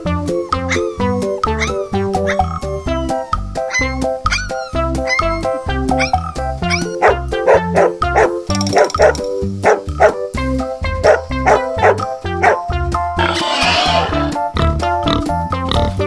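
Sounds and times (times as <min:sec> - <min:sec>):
background music with steady beat: 0:00.0 - 0:16.0
dog barking: 0:06.0 - 0:10.2, 0:11.0 - 0:12.6.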